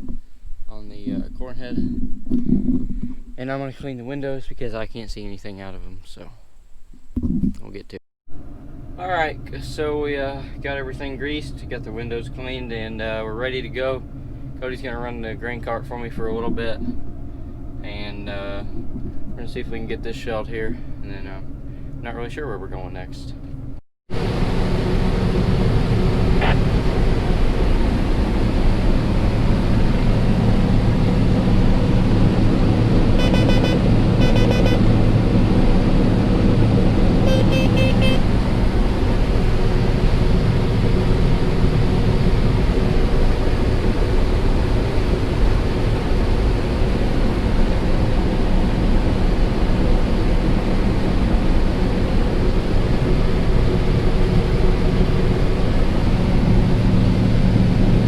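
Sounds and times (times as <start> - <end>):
combine harvester drone: 8.3 - 58.0
short electronic beeps: 33.2 - 34.8, 37.2 - 38.3.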